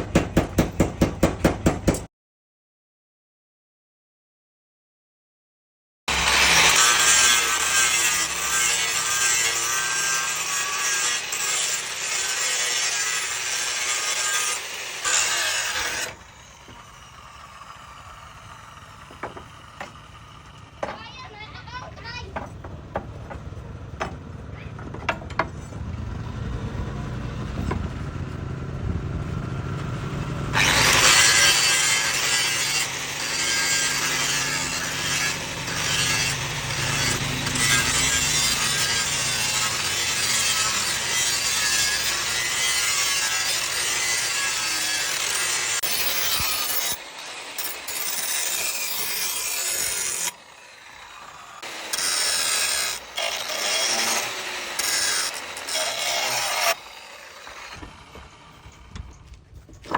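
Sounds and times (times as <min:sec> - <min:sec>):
low rumbling: 0:21.4 - 0:30.6.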